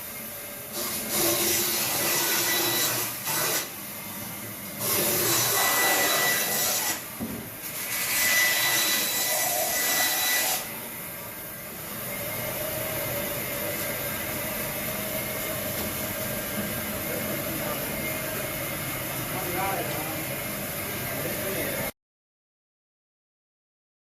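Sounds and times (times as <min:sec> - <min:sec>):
rasping sawing noise: 0:04.8 - 0:07.1, 0:07.7 - 0:10.7.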